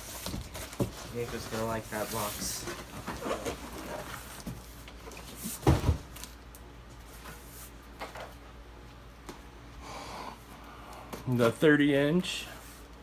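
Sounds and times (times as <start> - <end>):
cardboard box thumps: 5.6 - 6.1.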